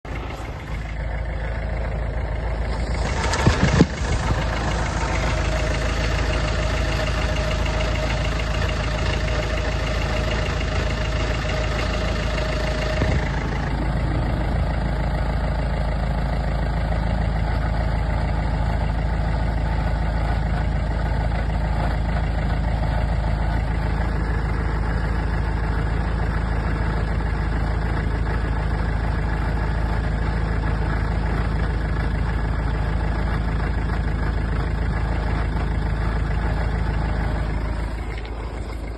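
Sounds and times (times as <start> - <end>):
steady whine: 0.0 - 15.9
diesel engine idling: 0.0 - 38.9.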